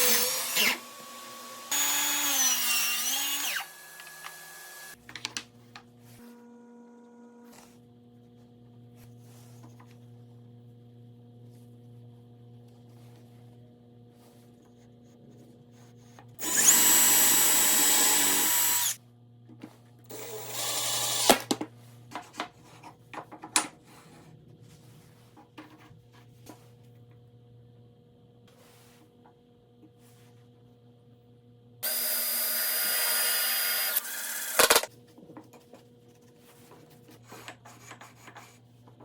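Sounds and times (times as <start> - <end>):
power tool whining: 0.0 - 5.0, 16.4 - 19.0, 31.8 - 34.9
faint electrical hum: 0.0 - 39.0.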